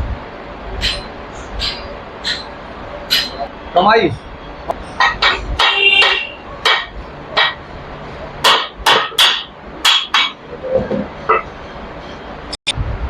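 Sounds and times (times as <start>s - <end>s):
hammer blows on metal: 0.8s - 3.5s, 4.1s - 7.6s.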